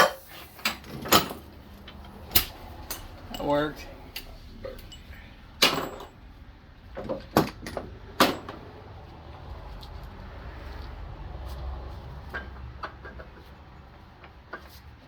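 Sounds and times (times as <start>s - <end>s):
hand tools knocking and clinking: 0.0s - 6.2s.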